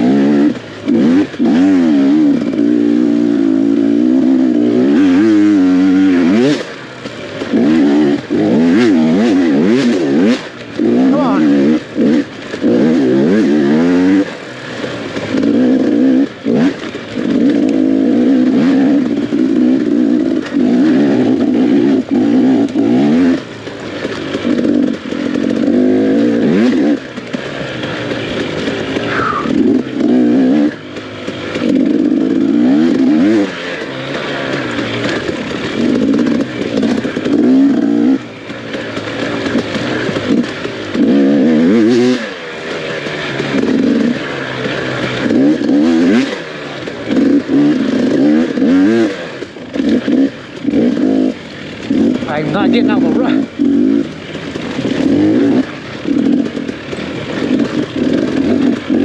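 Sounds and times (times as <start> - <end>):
dirt bike engine revving: 0.0 - 59.0.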